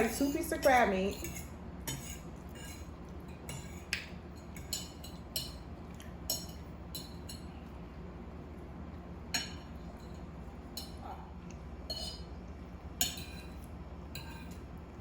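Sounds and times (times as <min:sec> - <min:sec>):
steady low hum: 0:00.0 - 0:15.0
cutlery and dishes clinking: 0:14.2 - 0:14.6.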